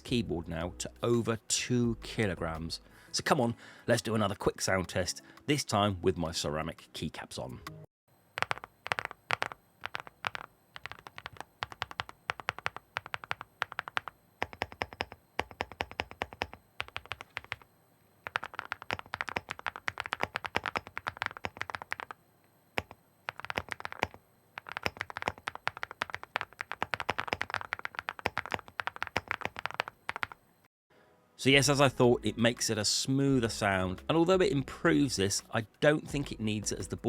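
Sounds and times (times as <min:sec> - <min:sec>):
mechanical keyboard typing: 0:08.4 - 0:22.2, 0:22.8 - 0:30.4.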